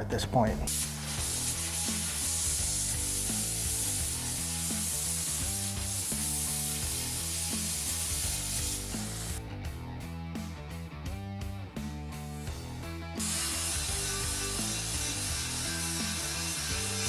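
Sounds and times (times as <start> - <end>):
sizzling metal sparks: 0.7 - 9.4, 12.4 - 17.0
music with steady beat: 0.7 - 17.0.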